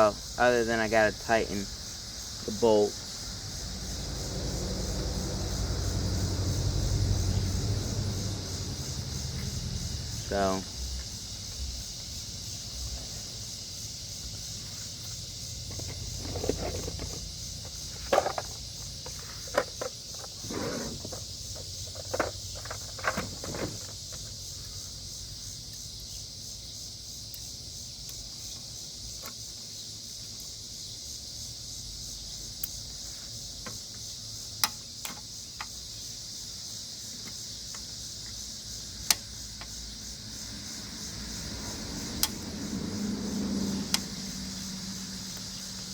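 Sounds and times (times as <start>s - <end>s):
steady high hiss: 0.0s - 16.2s.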